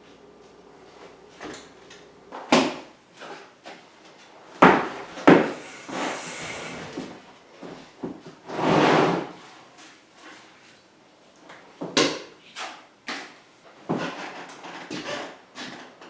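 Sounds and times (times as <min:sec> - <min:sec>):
drywall tool scraping: 0:05.3 - 0:07.3.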